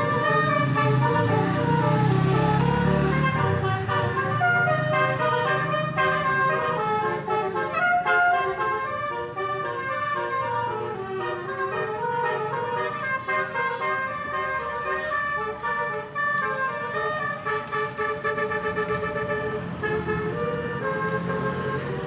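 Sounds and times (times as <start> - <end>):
low engine hum: 0.0 - 8.5
bus horn playing quick tune: 0.0 - 9.4, 11.2 - 22.0.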